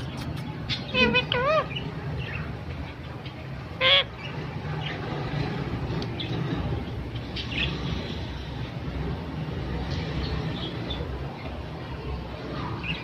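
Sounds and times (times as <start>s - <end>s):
parrot squawk: 0.8s - 1.8s, 3.8s - 4.3s.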